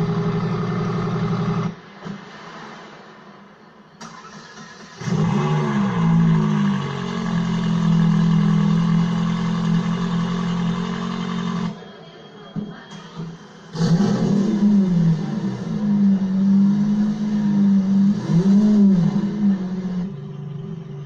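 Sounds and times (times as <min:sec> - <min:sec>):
supercar engine revving: 0:00.0 - 0:01.8, 0:04.9 - 0:11.8, 0:13.7 - 0:20.4.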